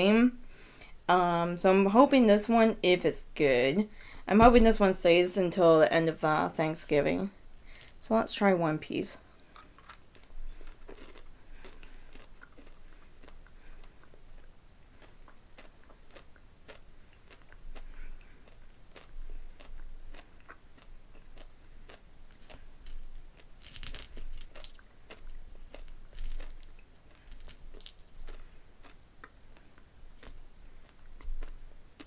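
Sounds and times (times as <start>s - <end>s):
chewing crunchy candy: 9.5s - 23.6s, 24.2s - 27.3s, 28.2s - 32.0s.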